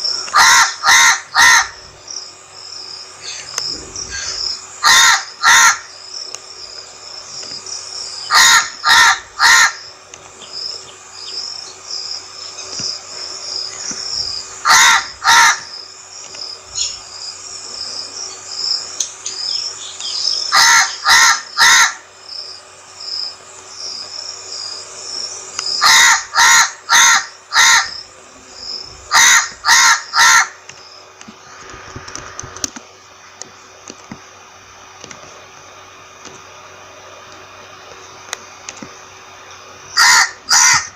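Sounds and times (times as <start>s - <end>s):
crow cawing: 0.2s - 1.8s, 4.1s - 5.9s, 8.3s - 9.9s, 14.6s - 15.8s, 20.5s - 22.1s, 25.8s - 28.0s, 29.1s - 30.6s, 40.0s - 40.9s.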